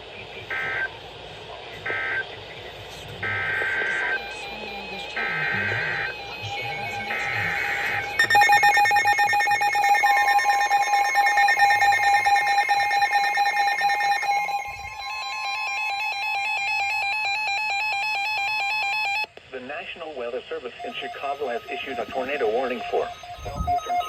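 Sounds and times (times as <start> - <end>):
long steady alarm tone: 1.8 - 19.3, 20.8 - 24.0
buzzy data bursts: 3.2 - 17.9
pulsing alarm beeps: 3.2 - 19.3, 20.8 - 24.0.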